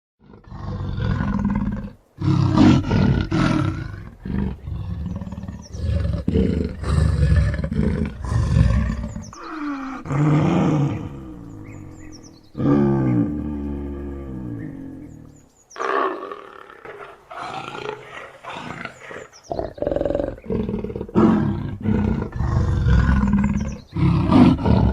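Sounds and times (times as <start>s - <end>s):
leopard growling and roaring: 0.2s - 24.9s.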